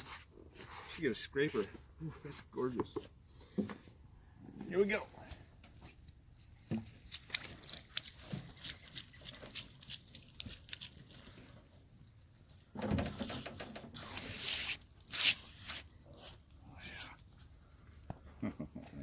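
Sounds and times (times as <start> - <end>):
rough wood scraping: 12.6 - 17.7
wood knocks and scrapes: 12.8 - 14.7.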